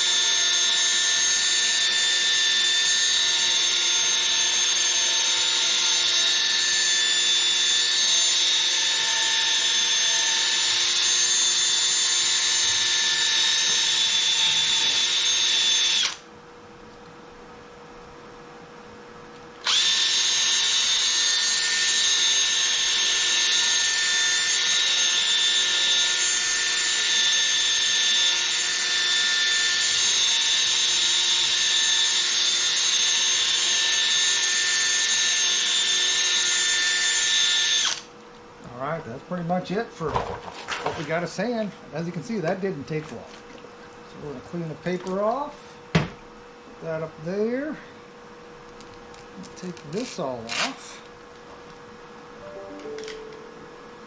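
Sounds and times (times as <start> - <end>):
cordless drill sanding plastic: 19.6 - 38.0.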